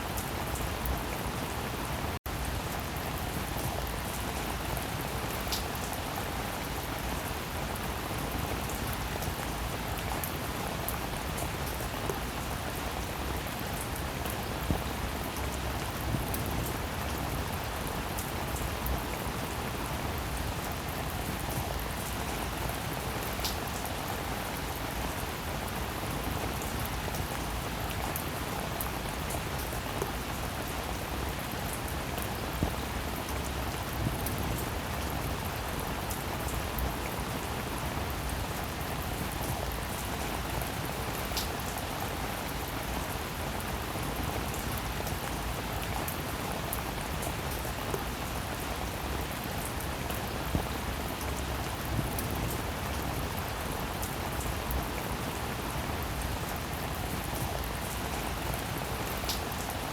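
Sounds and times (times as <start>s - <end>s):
steady rainfall: 0.0s - 59.9s.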